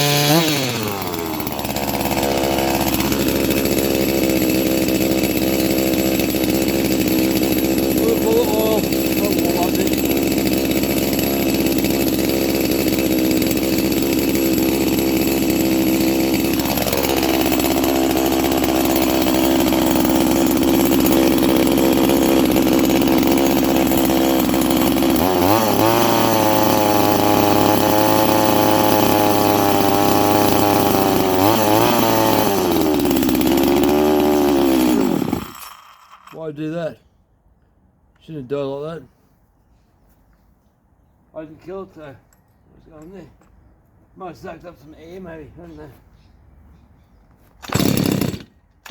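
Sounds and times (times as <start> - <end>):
chainsaw engine running: 0.0 - 36.4, 47.6 - 48.9.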